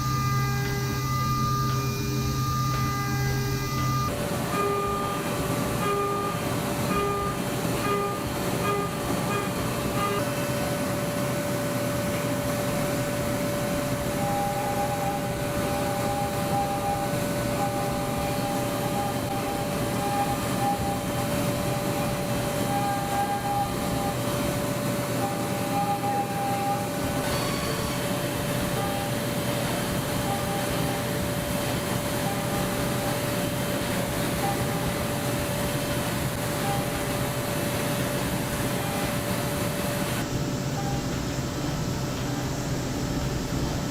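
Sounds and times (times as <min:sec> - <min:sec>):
short high tone: 0:00.0 - 0:05.2
higher machine tone: 0:00.0 - 0:43.9
milling machine cutting whine: 0:00.0 - 0:43.9.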